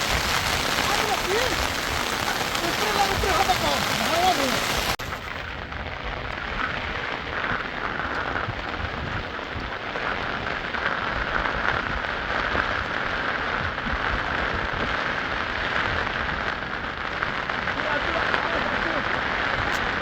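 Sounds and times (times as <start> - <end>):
water rushing: 0.0 - 5.6, 17.5 - 20.0.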